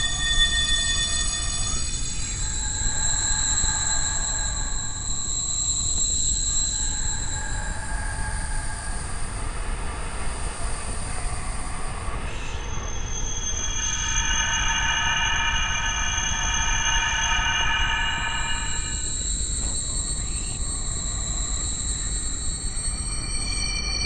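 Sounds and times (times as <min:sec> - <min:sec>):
shrill high tones: 0:12.8 - 0:24.0.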